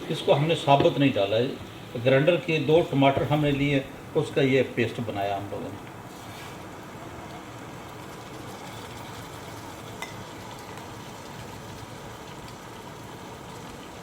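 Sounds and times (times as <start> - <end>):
sauce sizzling in hot oil: 6.0 - 14.0.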